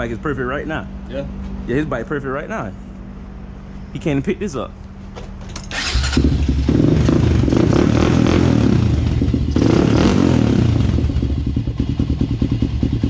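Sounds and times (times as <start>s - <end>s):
motorcycle engine revving: 5.5s - 13.0s.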